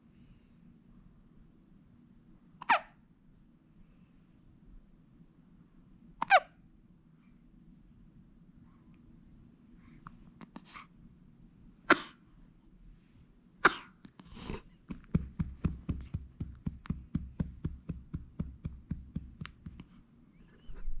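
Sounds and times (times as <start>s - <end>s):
baby coughing: 2.6s - 2.9s, 6.2s - 6.5s, 11.9s - 12.2s, 13.6s - 14.6s
baby hiccups: 2.6s - 3.0s, 6.2s - 6.5s, 11.9s - 12.2s
soft thumps: 14.9s - 19.9s.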